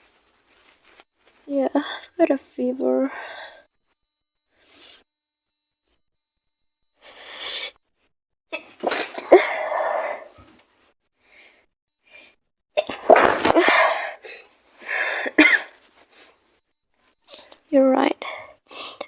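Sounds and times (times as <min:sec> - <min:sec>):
drawn-in breath: 0:03.0 - 0:03.8, 0:04.5 - 0:05.1, 0:06.9 - 0:07.8, 0:11.2 - 0:12.4, 0:13.5 - 0:15.4.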